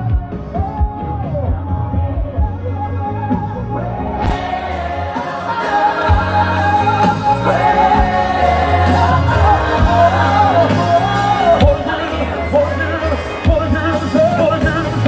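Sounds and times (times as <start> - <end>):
low bass notes: 0.0 - 15.0
person singing gospel: 0.0 - 15.0
drum hits: 4.2 - 5.4.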